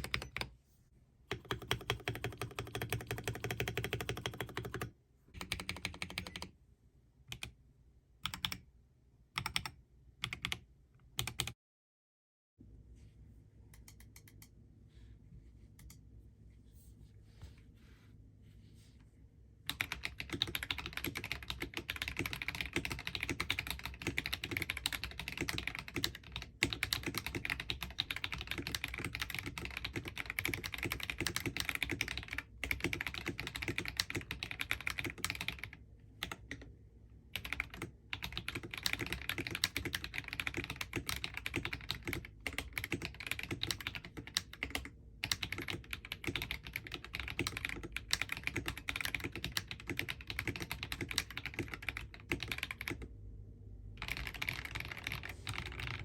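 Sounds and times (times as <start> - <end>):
typing on mechanical keyboard: 0.0 - 0.5, 1.3 - 6.5, 8.2 - 8.6, 9.4 - 10.6, 11.2 - 11.6, 19.7 - 36.7, 37.4 - 53.1, 54.0 - 56.0.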